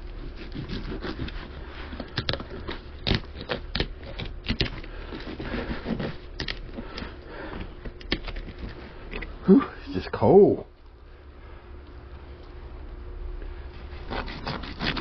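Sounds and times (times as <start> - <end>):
knife cutting and scraping fish: 0.0 - 9.3, 13.7 - 15.0.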